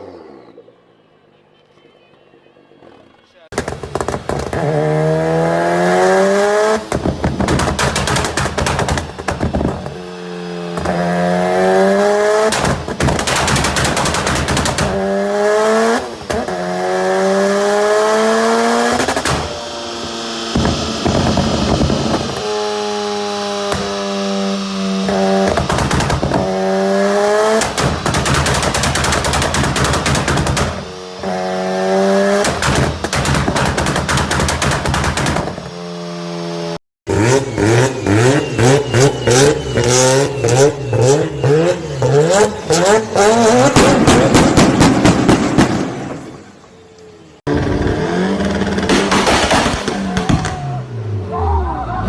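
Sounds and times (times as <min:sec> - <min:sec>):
car engines revving: 0:00.0 - 0:52.0
exhaust pops and bangs: 0:03.5 - 0:05.0, 0:06.6 - 0:10.0, 0:10.7 - 0:11.2, 0:12.4 - 0:15.1, 0:18.9 - 0:19.6, 0:20.4 - 0:22.6, 0:23.6 - 0:24.0, 0:25.0 - 0:26.8, 0:27.4 - 0:31.3, 0:32.3 - 0:35.8, 0:43.5 - 0:46.4, 0:47.5 - 0:50.8.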